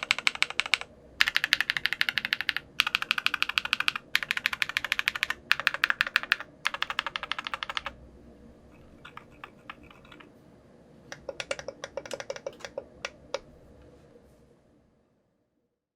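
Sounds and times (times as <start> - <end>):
mechanical keyboard typing: 0.0 - 8.0, 8.7 - 10.3, 11.1 - 13.5.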